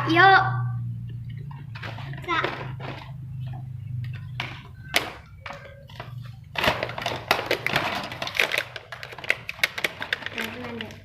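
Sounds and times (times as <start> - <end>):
steady low hum: 0.0 - 7.5
packaging crinkling and rustling: 5.0 - 11.0.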